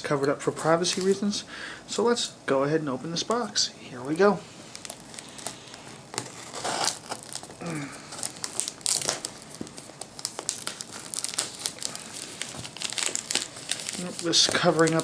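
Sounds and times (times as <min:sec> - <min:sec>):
packing tape tearing: 0:04.7 - 0:15.0.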